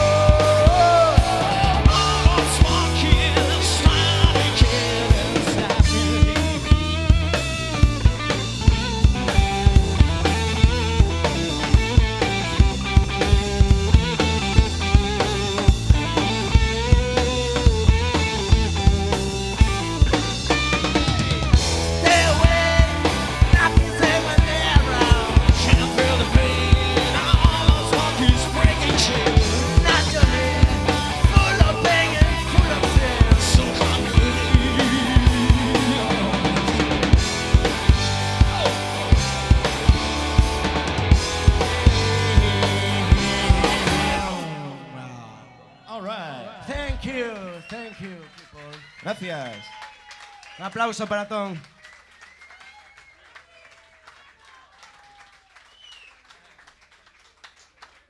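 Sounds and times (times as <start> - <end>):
drum kit beat: 0.0 - 44.7
rock band playing: 0.0 - 45.2.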